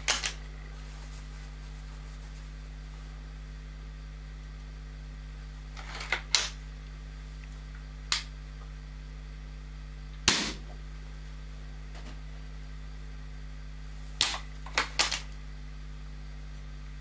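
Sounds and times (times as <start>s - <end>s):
air rifle mechanical clicks: 0.0s - 0.4s
air rifle shot crack: 10.3s - 10.8s.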